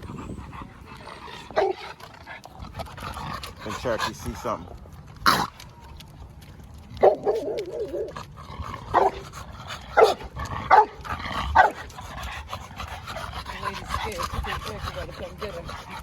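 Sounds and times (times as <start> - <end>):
dog barking: 7.0 - 8.1, 8.9 - 9.2, 10.0 - 11.0, 11.6 - 11.8.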